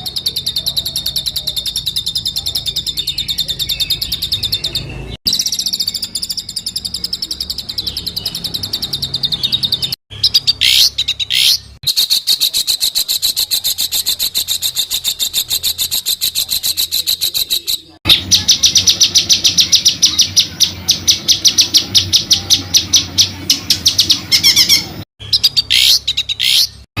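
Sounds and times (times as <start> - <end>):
songbird trilling: 0.0 - 26.8.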